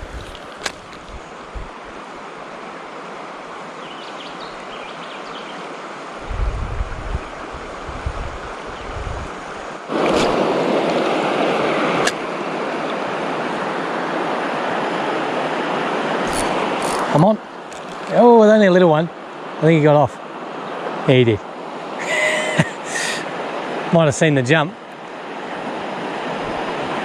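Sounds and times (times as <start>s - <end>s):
wind buffeting microphone: 0.0s - 2.0s, 6.2s - 9.7s
river water rushing: 0.0s - 6.3s, 7.0s - 27.0s.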